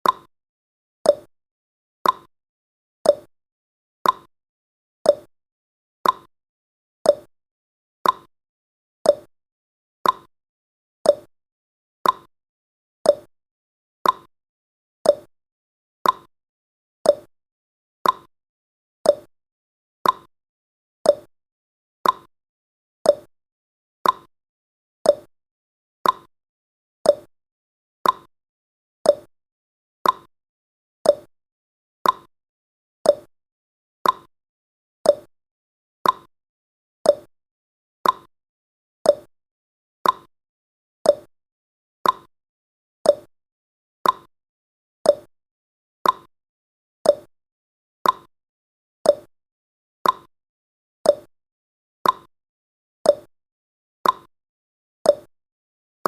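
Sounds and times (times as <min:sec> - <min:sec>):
clock ticking: 0:18.0 - 0:18.3, 0:34.0 - 0:34.3, 0:38.0 - 0:38.3, 0:42.0 - 0:42.3, 0:48.0 - 0:48.3, 0:50.0 - 0:50.3.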